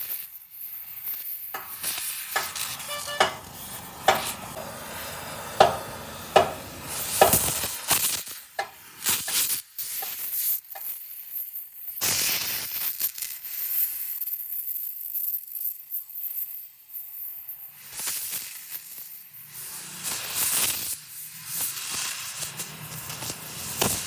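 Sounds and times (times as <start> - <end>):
metal clinking and knocking: 1.6 - 4.8, 5.6 - 7.6, 8.6 - 9.4
metal scraping: 1.6 - 7.6, 8.6 - 9.4.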